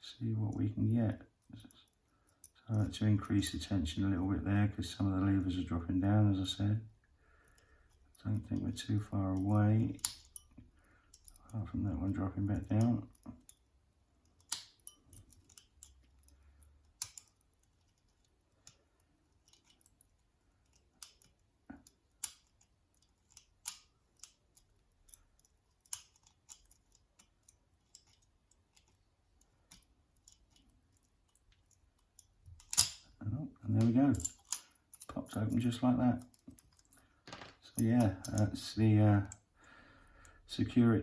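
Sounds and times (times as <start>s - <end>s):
small metallic clicks in padlock: 7.4s - 11.6s, 12.4s - 38.6s.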